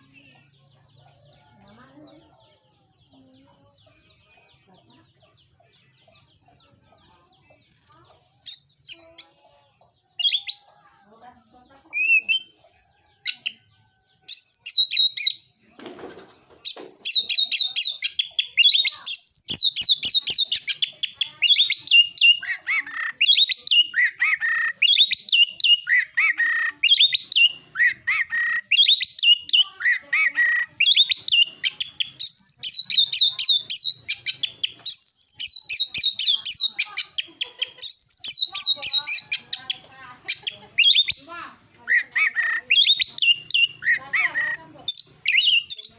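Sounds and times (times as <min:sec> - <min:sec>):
bird singing chirps and whistles: 0:14.3 - 0:15.4, 0:16.7 - 0:36.7, 0:40.8 - 0:41.3, 0:41.9 - 0:45.9.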